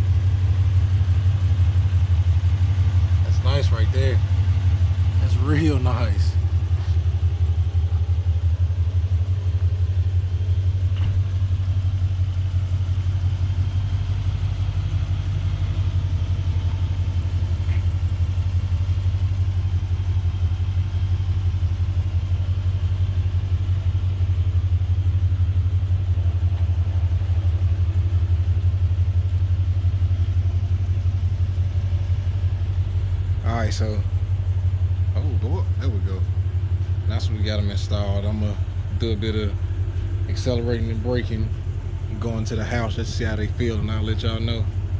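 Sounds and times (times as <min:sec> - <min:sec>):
engine idling: 0:00.0 - 0:44.9.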